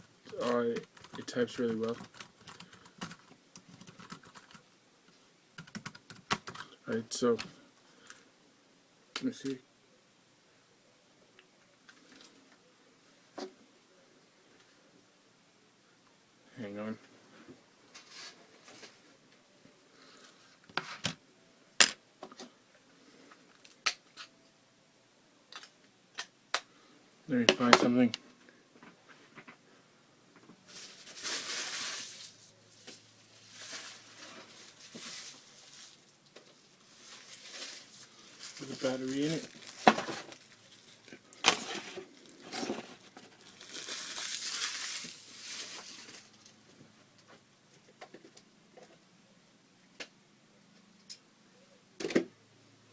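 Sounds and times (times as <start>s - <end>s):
packaging crinkling and tearing: 30.7s - 36.1s, 36.9s - 46.5s.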